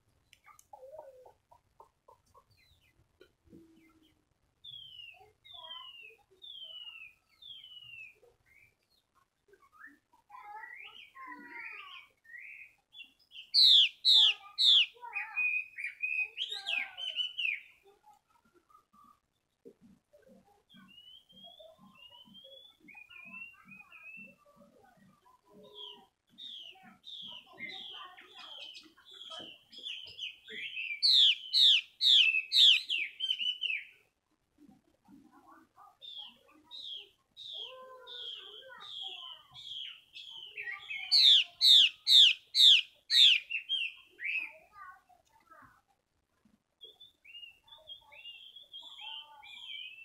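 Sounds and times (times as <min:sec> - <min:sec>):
bird singing warbling phrases: 0:00.0 - 0:50.0
bird whistling calls: 0:13.3 - 0:17.6, 0:28.6 - 0:33.9, 0:36.1 - 0:44.5.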